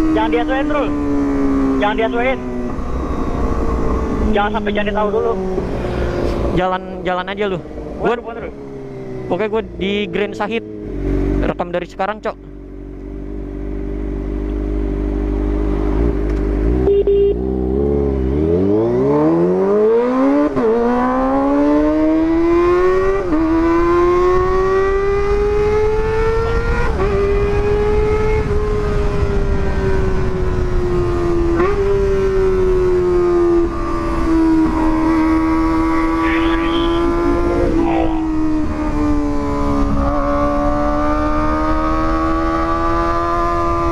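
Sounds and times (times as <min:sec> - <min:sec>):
motorcycle engine accelerating: 0:00.0 - 0:43.9.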